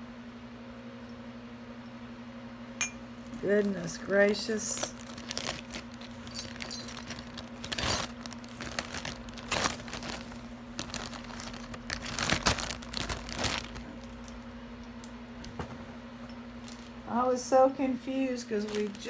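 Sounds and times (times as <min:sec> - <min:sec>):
faint steady hum: 0:00.0 - 0:19.0
wrapping crinkling: 0:03.2 - 0:15.6, 0:16.5 - 0:17.1, 0:18.3 - 0:19.0.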